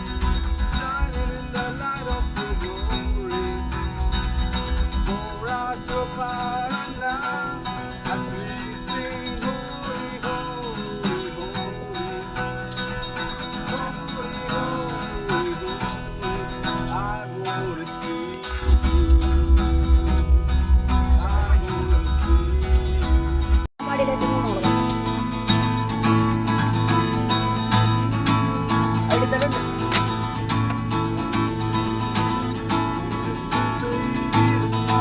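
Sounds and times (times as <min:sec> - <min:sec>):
background music with guitar: 0:00.0 - 0:35.0
wavering melody line: 0:18.5 - 0:23.7.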